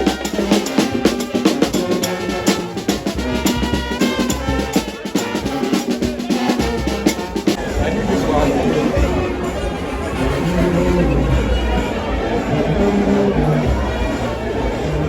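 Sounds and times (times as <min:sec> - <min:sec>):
loud music with drum beat: 0:00.0 - 0:11.6.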